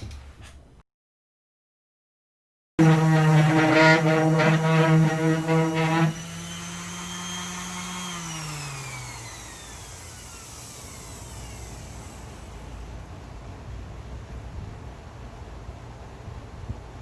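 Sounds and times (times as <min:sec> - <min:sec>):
electric power tool motor: 0:02.8 - 0:12.9.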